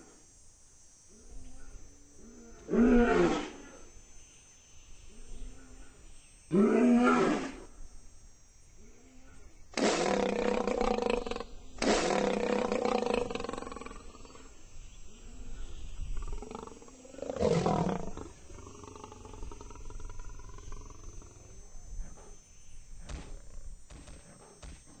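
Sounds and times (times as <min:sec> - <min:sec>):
lion roaring: 0:02.2 - 0:03.8, 0:09.8 - 0:14.5, 0:15.2 - 0:22.3.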